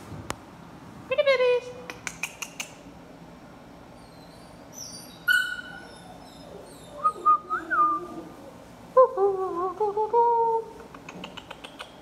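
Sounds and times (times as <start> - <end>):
puppy whining: 3.9 - 8.6
puppy squealing: 4.0 - 8.2.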